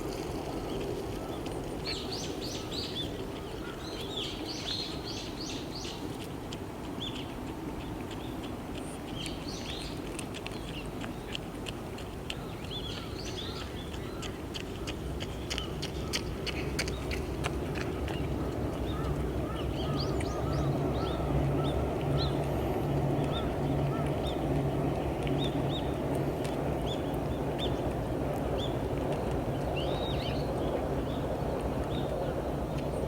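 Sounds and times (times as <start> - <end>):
small birds chirping: 0.7 - 6.2, 6.9 - 11.5, 12.3 - 33.0
low background rumble: 10.6 - 33.0.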